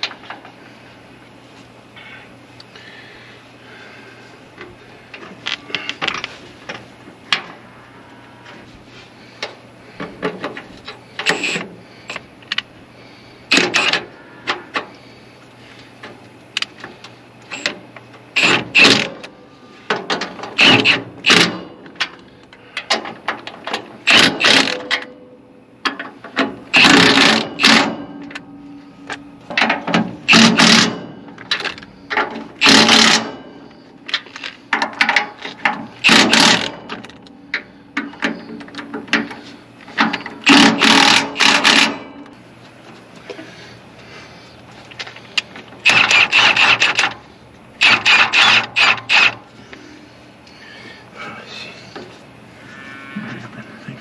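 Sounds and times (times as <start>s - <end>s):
low steady hum: 0.0s - 54.0s
ratchet wrench clicking: 40.4s - 42.0s, 45.8s - 47.2s, 47.8s - 49.4s.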